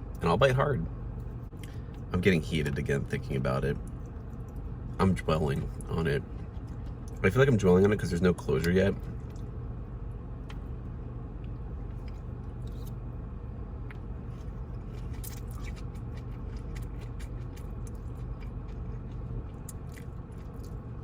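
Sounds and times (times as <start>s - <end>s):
steady low hum: 0.0s - 21.0s
chewing and biting food: 5.5s - 7.3s, 13.9s - 21.0s.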